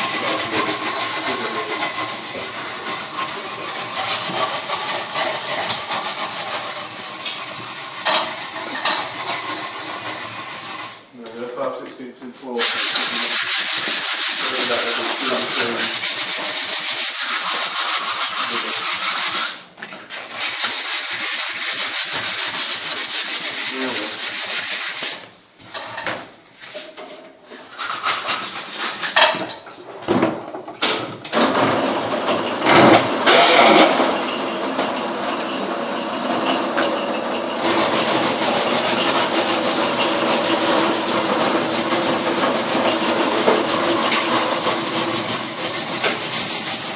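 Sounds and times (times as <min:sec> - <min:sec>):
wood being sanded: 0:00.0 - 0:11.1, 0:12.5 - 0:19.6, 0:20.3 - 0:25.3, 0:27.7 - 0:29.3, 0:37.6 - 0:46.9.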